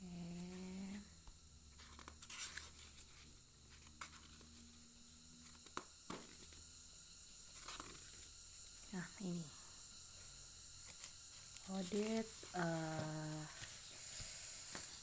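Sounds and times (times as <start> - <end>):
faint low hum: 0.0 - 15.0
paper sticker sheets rustling: 1.7 - 4.8, 10.8 - 15.0.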